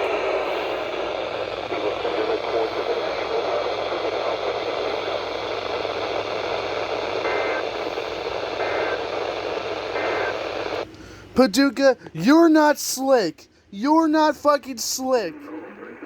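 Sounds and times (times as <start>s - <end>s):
radio static: 0.0s - 10.9s, 14.0s - 16.0s
two-tone data bursts: 0.7s - 10.8s.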